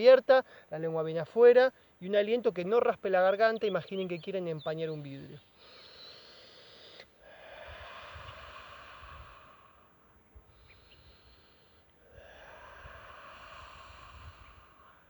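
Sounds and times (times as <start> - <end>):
breath in through nose: 5.6 - 15.0
forceful breathy exhales: 5.6 - 15.0.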